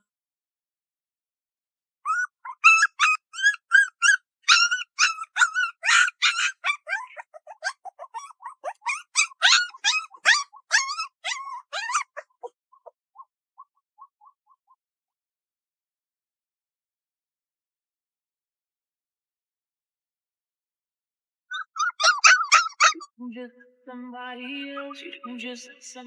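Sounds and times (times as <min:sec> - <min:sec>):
puppies whimpering and yelping: 0:02.1 - 0:12.9, 0:21.5 - 0:23.2.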